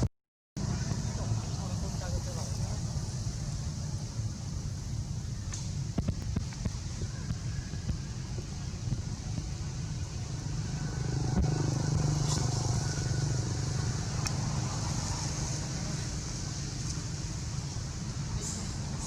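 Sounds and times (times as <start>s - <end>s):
vehicle engine passing by: 10.3s - 17.2s.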